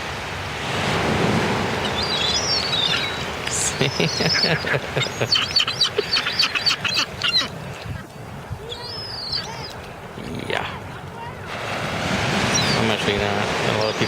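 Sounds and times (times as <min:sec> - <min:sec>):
seagulls squawking: 0:01.7 - 0:09.9, 0:12.4 - 0:13.1.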